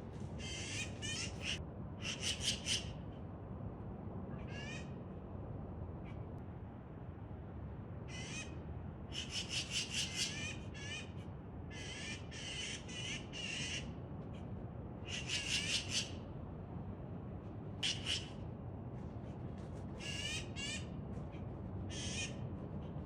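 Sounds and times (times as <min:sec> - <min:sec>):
magpie rattling chatter calls: 0:00.4 - 0:02.9, 0:08.1 - 0:11.1, 0:11.7 - 0:13.9, 0:15.1 - 0:16.2, 0:17.8 - 0:18.4, 0:20.0 - 0:20.9, 0:21.9 - 0:22.4.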